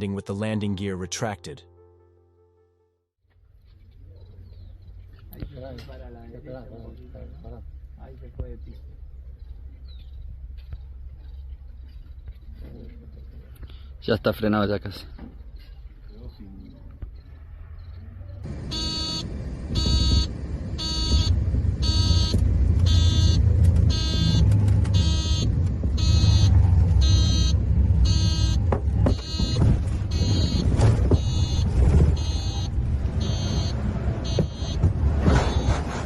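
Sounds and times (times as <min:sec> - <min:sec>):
electronic alarm beeping: 0:18.7 - 0:24.4, 0:25.0 - 0:34.8, 0:35.4 - 0:35.7.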